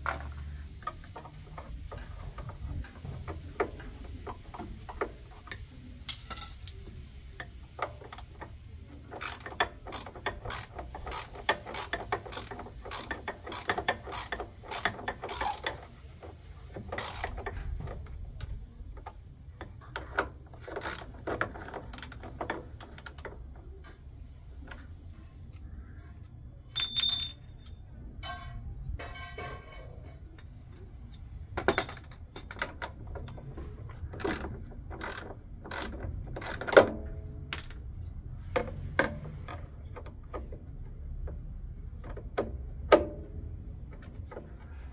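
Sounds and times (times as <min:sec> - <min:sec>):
metal parts clicking and rattling: 0:09.1 - 0:15.8, 0:26.7 - 0:30.0, 0:31.1 - 0:33.4.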